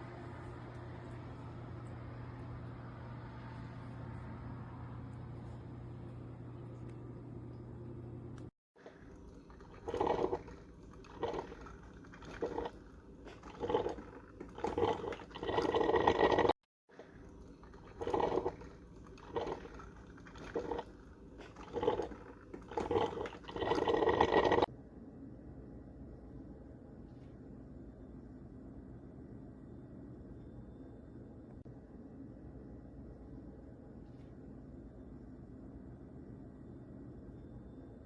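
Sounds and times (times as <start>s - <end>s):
coffee percolator gurgling: 8.8s - 24.7s.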